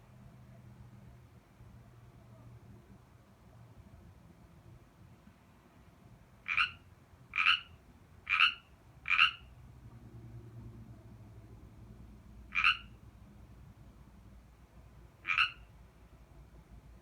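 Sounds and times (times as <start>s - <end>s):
frog croaking: 6.4s - 9.5s, 12.5s - 13.0s, 15.2s - 15.7s.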